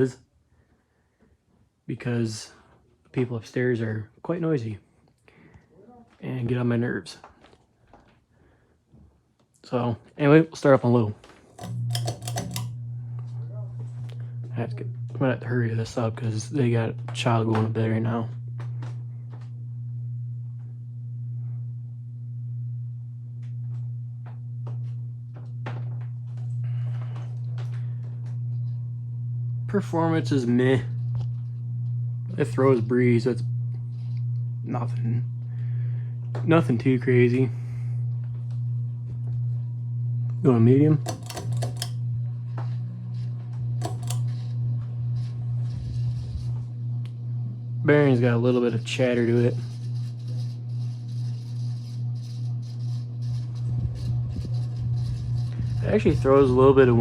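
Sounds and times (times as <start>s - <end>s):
ceiling fan motor humming: 10.6s - 57.0s
fan bearing clicks: 11.6s - 12.7s, 41.0s - 42.0s, 43.8s - 44.3s.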